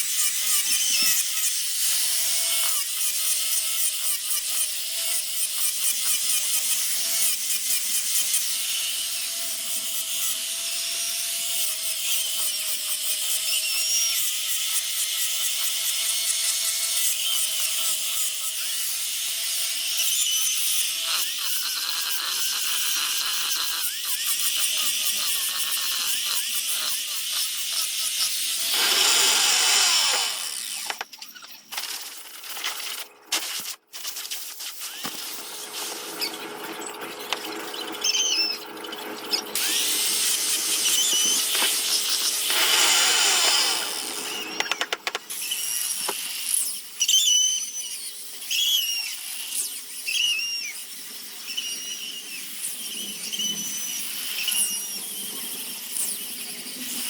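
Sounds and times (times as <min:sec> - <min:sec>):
sanding wood: 0:21.4 - 0:30.8, 0:31.9 - 0:45.2
short high squeaks: 0:29.0 - 0:56.2.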